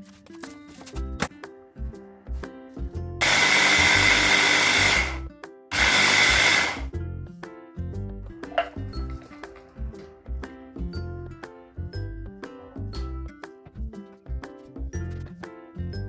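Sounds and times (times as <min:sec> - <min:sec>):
background music: 0:00.0 - 0:16.0
kitchen appliance motor running: 0:03.2 - 0:06.9.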